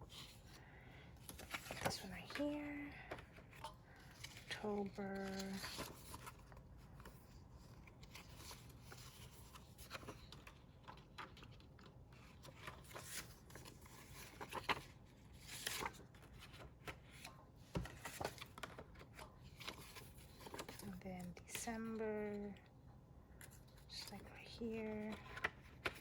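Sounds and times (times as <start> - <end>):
paper rustling: 1.2 - 21.6.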